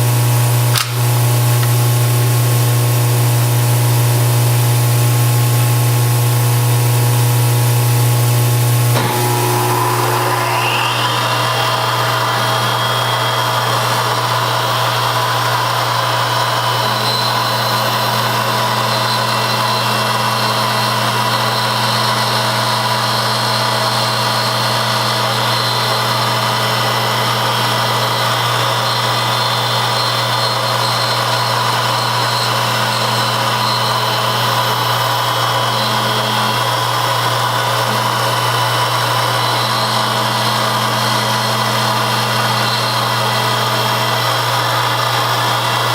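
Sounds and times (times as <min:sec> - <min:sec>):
machine tool motor humming: 0:04.8 - 0:45.9
higher hum: 0:08.5 - 0:15.8.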